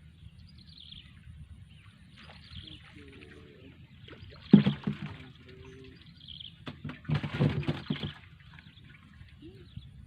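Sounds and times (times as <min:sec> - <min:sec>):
water splashing: 0:02.1 - 0:09.8.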